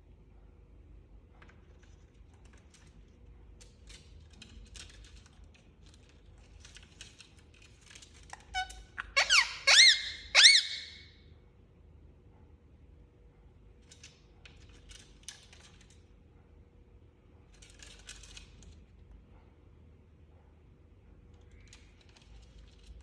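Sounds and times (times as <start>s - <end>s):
parakeet squawking: 8.5s - 11.1s.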